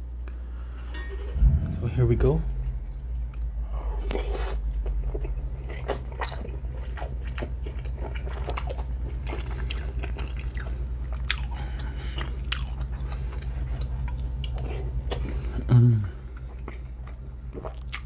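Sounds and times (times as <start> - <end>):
steady low hum: 0.0 - 8.4.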